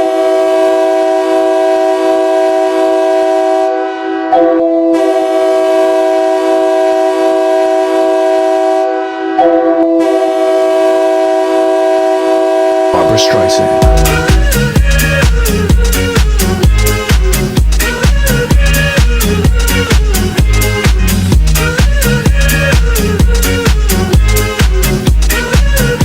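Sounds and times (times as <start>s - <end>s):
multi-tone goal horn blasts: 0.0s - 14.8s.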